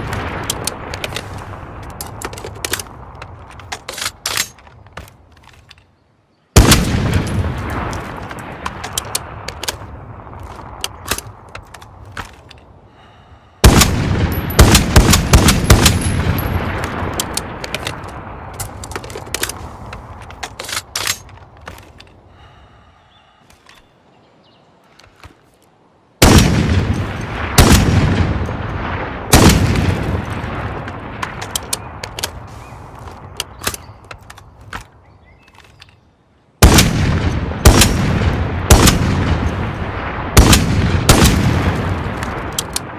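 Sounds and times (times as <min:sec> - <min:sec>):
rifle shots echoing: 0:06.6 - 0:10.0, 0:13.6 - 0:19.8, 0:26.2 - 0:32.0, 0:36.6 - 0:42.9.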